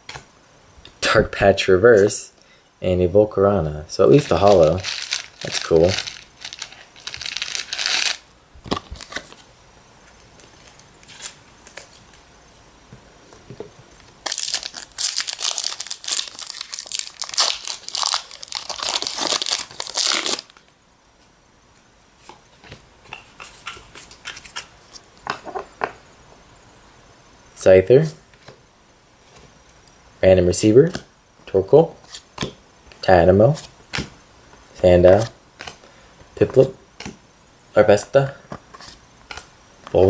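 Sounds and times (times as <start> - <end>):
packaging tearing and crinkling: 4.1 - 9.5, 14.2 - 20.6.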